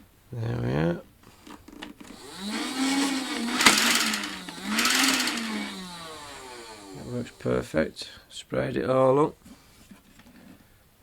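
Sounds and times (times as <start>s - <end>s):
toy motor whirring hum: 2.0s - 7.8s
rattling hiss: 2.1s - 8.2s.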